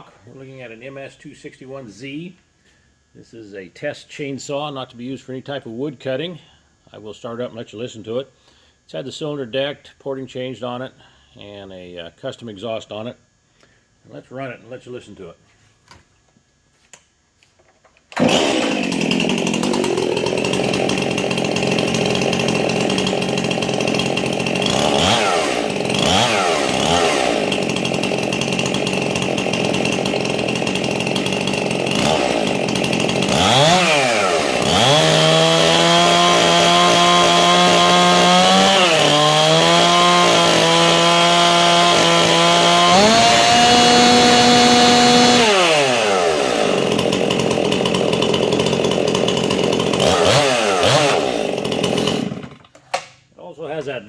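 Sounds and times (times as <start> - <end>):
chainsaw revving high: 18.2 - 52.6.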